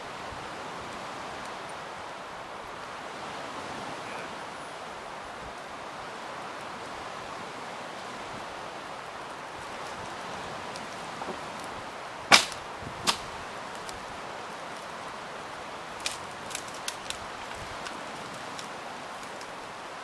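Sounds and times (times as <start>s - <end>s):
steady background hiss: 0.0s - 20.0s
campfire wood popping: 8.0s - 19.8s.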